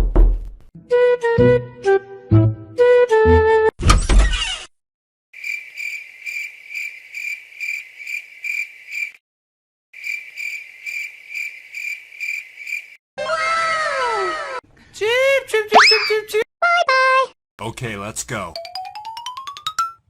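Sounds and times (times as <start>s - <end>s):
cricket chirping: 5.4s - 9.2s, 10.0s - 13.0s.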